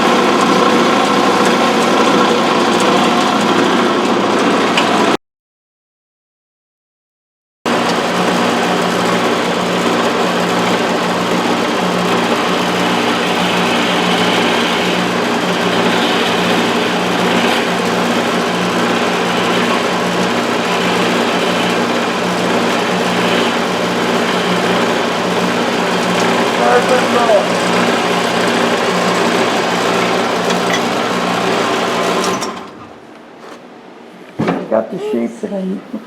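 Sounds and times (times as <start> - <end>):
wood lathe turning wood: 0.0 - 5.2, 7.7 - 32.8.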